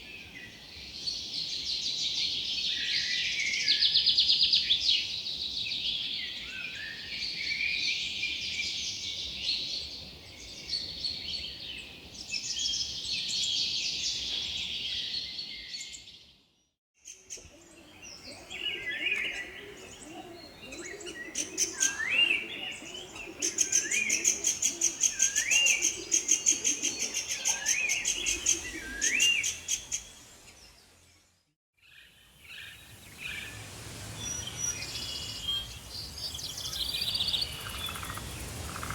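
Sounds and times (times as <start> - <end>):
songbirds chirping in chorus: 0.0 - 38.9
fast high bird trill: 36.1 - 38.9.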